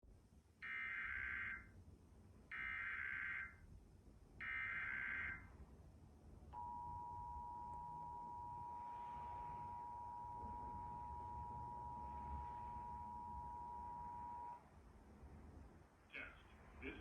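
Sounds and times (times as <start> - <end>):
data tone bursts: 6.6 - 14.6
two-tone attention signal: 6.6 - 14.6.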